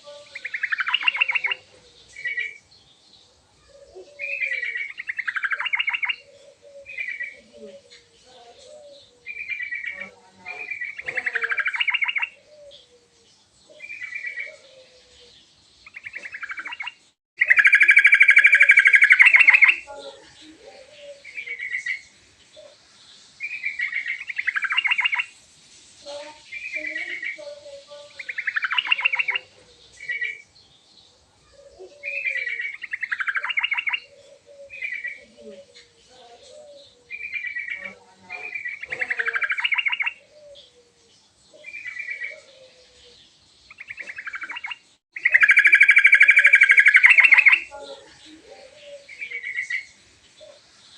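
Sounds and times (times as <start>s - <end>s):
faint low bird calls: 0.0s - 22.8s, 26.4s - 50.7s
bulbul bubbling song: 0.4s - 1.6s, 15.8s - 19.9s, 43.7s - 47.7s.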